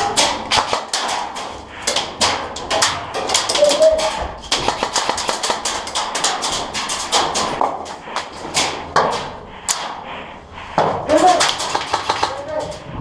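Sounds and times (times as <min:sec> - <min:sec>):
airsoft gunfire: 0:04.5 - 0:07.6, 0:11.3 - 0:12.5.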